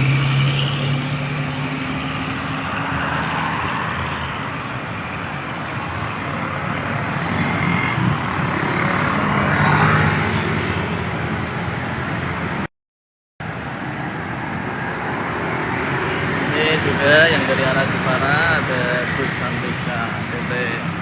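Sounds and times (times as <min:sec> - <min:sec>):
passing vehicles: 0:00.0 - 0:12.7, 0:13.4 - 0:21.0.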